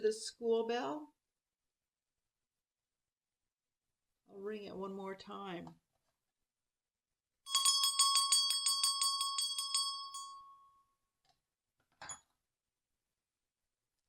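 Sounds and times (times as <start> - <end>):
hand bell ringing rapidly: 7.5 - 10.6.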